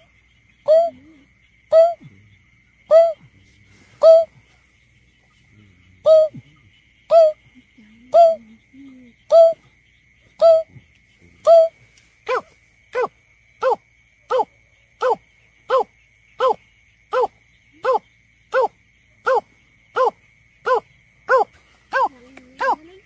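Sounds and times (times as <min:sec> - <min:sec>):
bird hollow hooting: 0:00.0 - 0:02.1, 0:02.9 - 0:03.2, 0:04.0 - 0:04.4, 0:06.0 - 0:06.5, 0:07.1 - 0:07.4, 0:08.1 - 0:08.6, 0:10.4 - 0:10.7, 0:11.4 - 0:12.4.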